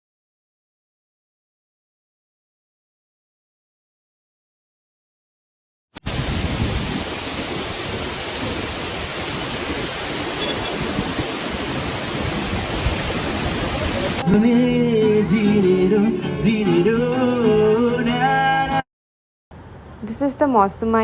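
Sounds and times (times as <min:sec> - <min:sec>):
stream water rushing: 0:06.1 - 0:14.3
background music with singing: 0:14.2 - 0:18.8.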